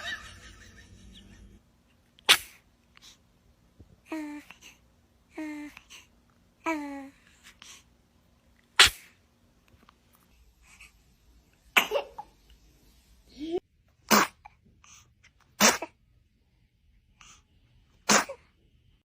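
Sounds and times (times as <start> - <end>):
baby sneezing: 2.2 - 2.6, 8.8 - 9.2, 11.8 - 12.3, 14.0 - 14.6, 15.5 - 16.0, 18.0 - 18.5.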